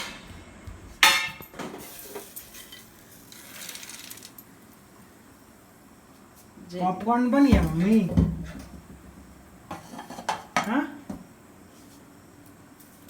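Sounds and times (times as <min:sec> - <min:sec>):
metal kitchenware clanking: 0:01.0 - 0:02.9.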